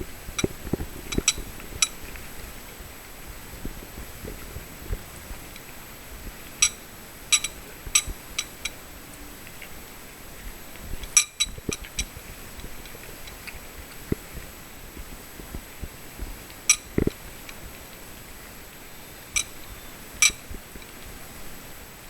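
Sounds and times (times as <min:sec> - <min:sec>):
cat eating with clicks: 0:05.3 - 0:18.1.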